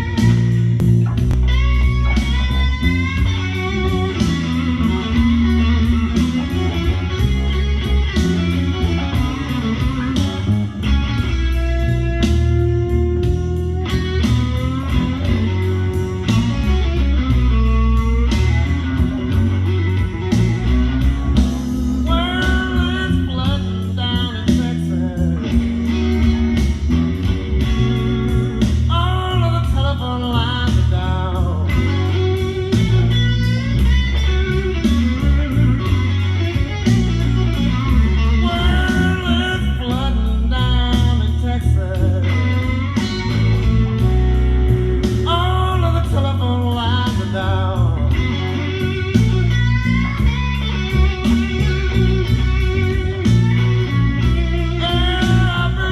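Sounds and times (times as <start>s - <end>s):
bass and drums beat: 0.0s - 55.9s
electric guitar bending notes: 0.0s - 55.9s
person singing: 21.1s - 26.4s, 27.9s - 33.6s, 37.7s - 44.2s, 45.0s - 49.0s, 54.7s - 55.9s.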